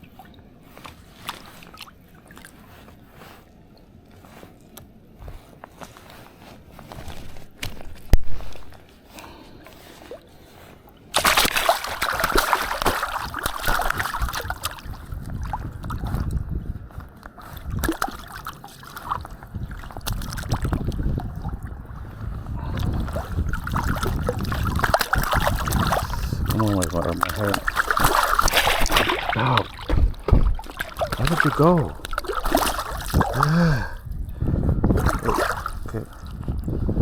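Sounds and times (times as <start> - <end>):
creek water splashing: 9.8 - 16.0, 17.3 - 22.0, 22.6 - 34.0, 34.9 - 36.4.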